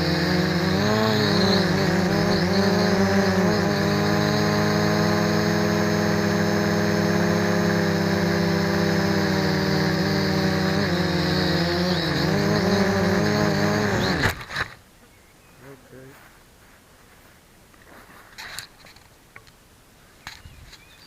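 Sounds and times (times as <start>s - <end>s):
drone propellers buzzing: 0.0s - 14.8s.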